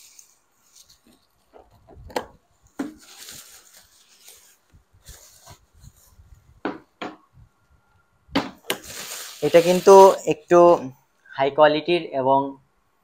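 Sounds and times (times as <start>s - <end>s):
rubbing and scraping: 8.8s - 10.3s.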